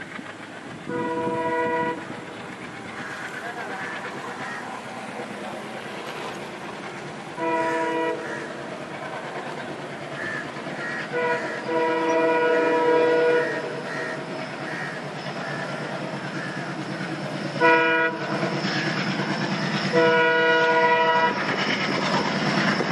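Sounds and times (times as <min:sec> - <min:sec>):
train running noise: 0:00.0 - 0:22.9
locomotive horn: 0:00.9 - 0:02.2, 0:07.4 - 0:08.4, 0:11.1 - 0:14.1, 0:17.6 - 0:18.5, 0:19.9 - 0:21.4.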